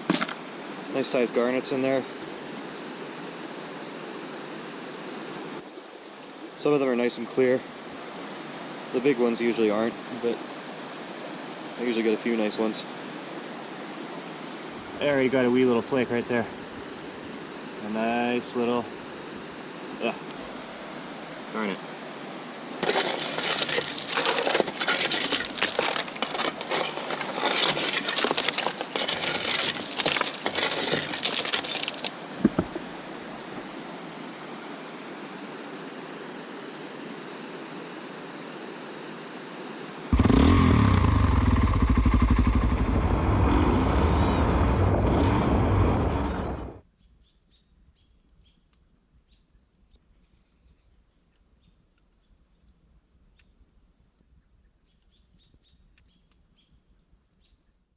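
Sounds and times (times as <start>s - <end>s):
loud rustling and crackling: 22.8s - 32.2s
motorbike engine running: 40.1s - 46.7s.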